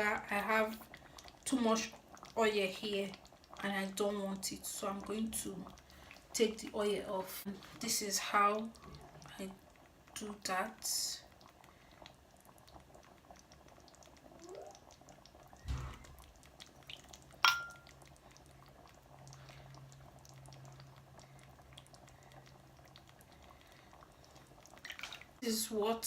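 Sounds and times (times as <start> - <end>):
faint dripping: 0.0 - 25.4
spoon clinking on pot: 17.4 - 17.9.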